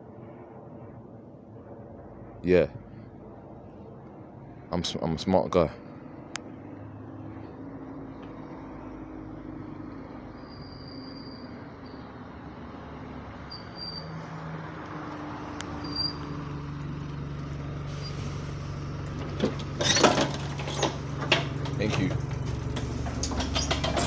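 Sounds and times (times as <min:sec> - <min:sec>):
faint high whines: 0:05.7 - 0:14.6
bus engine hum: 0:05.7 - 0:24.0
sharp knocks and clatters: 0:19.1 - 0:24.0.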